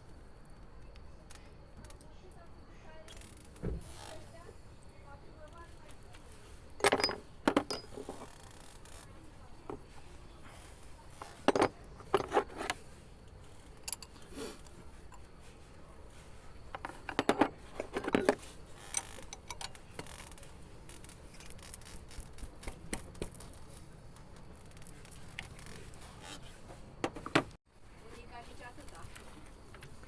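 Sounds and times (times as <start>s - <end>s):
metal tools clinking: 6.7s - 8.6s, 13.8s - 14.2s, 16.8s - 20.4s.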